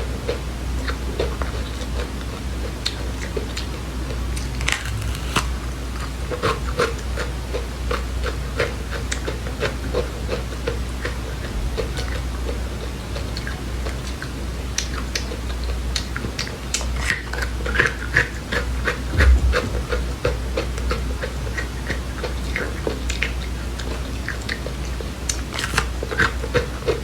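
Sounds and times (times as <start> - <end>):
chewing and crunching seeds: 0.0 - 19.6, 21.8 - 27.0
low hum: 4.1 - 6.4, 11.0 - 14.6, 18.7 - 22.2.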